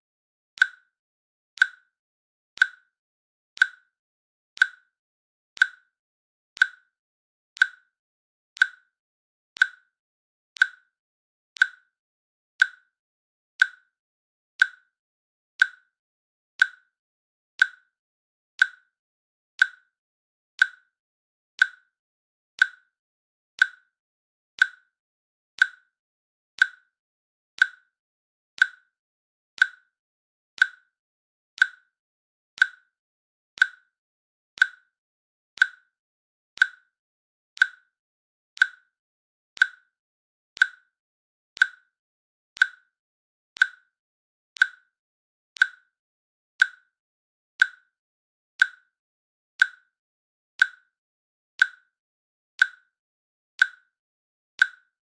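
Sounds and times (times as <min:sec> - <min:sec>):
timer clicks: 0:00.6 - 0:00.9, 0:01.6 - 0:01.9, 0:02.6 - 0:02.9, 0:03.6 - 0:03.9, 0:04.6 - 0:04.9, 0:05.6 - 0:05.9, 0:06.6 - 0:07.0, 0:07.6 - 0:07.9, 0:08.6 - 0:08.9, 0:09.6 - 0:09.9, 0:10.6 - 0:10.9, 0:11.6 - 0:11.9, 0:12.6 - 0:12.9, 0:13.6 - 0:13.9, 0:14.6 - 0:14.9, 0:15.6 - 0:15.9, 0:16.6 - 0:16.9, 0:17.6 - 0:17.9, 0:18.6 - 0:18.9, 0:19.6 - 0:20.0, 0:20.6 - 0:21.0, 0:21.6 - 0:21.9, 0:22.6 - 0:23.0, 0:23.6 - 0:24.0, 0:24.6 - 0:25.0, 0:25.6 - 0:26.0, 0:26.6 - 0:27.0, 0:27.6 - 0:28.0, 0:28.6 - 0:29.0, 0:29.6 - 0:30.0, 0:30.6 - 0:31.0, 0:31.6 - 0:32.0, 0:32.6 - 0:33.0, 0:33.6 - 0:34.0, 0:34.6 - 0:35.0, 0:35.6 - 0:36.0, 0:36.6 - 0:37.0, 0:37.6 - 0:38.0, 0:38.6 - 0:39.0, 0:39.6 - 0:40.0, 0:40.6 - 0:41.0, 0:41.6 - 0:42.0, 0:42.6 - 0:43.0, 0:43.6 - 0:44.0, 0:44.6 - 0:45.0, 0:45.6 - 0:46.0, 0:46.6 - 0:47.0, 0:47.6 - 0:47.9, 0:48.6 - 0:48.9, 0:49.6 - 0:49.9, 0:50.6 - 0:50.9, 0:51.6 - 0:51.9, 0:52.6 - 0:52.9, 0:53.6 - 0:53.9, 0:54.6 - 0:54.9.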